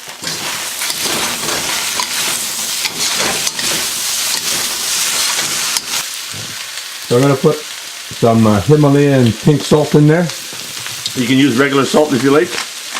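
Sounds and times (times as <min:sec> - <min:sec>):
ladle scraping wok: 0:00.0 - 0:06.8
stir-fry sizzling in a wok: 0:00.0 - 0:12.9.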